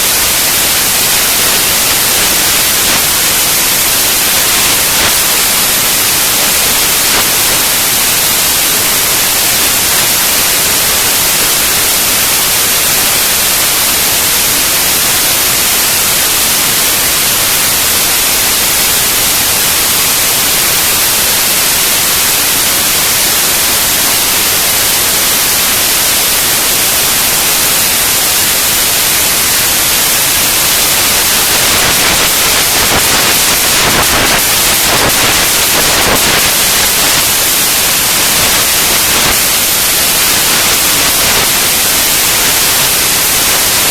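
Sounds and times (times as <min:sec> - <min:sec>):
loud steady hiss: 0:00.0 - 0:43.9.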